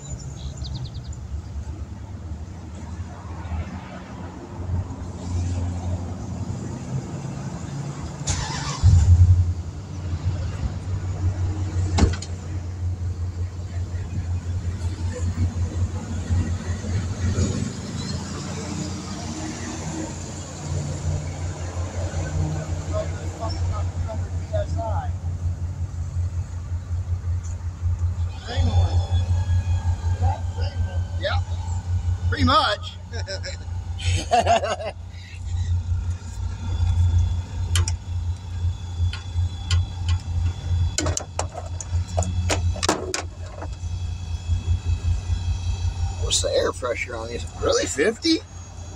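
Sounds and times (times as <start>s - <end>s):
motor rumbling: 20.1s - 48.9s.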